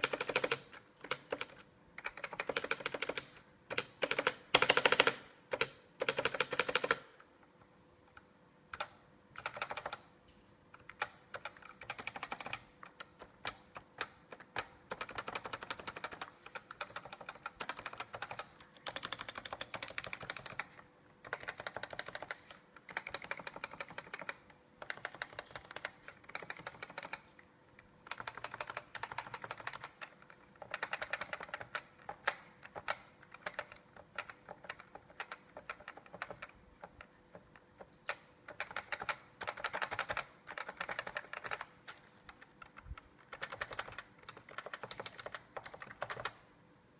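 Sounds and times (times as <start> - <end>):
keyboard typing: 0.0 - 7.3, 8.0 - 10.1, 10.7 - 46.5.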